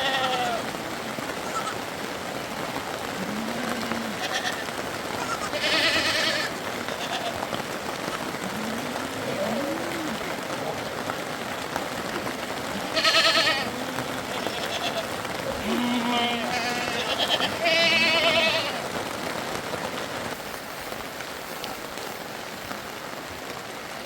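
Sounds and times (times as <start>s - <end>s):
sheep bleating: 0.0s - 0.7s, 1.4s - 1.8s, 3.2s - 7.5s, 12.7s - 18.9s.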